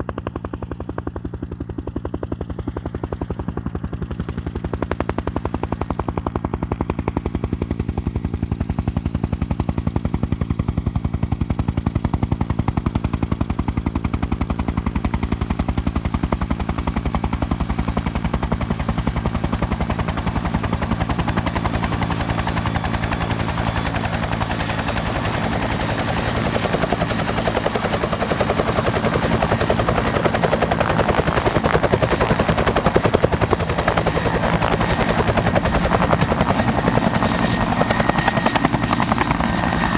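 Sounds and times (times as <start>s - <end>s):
helicopter rotor beating: 11.0s - 39.9s.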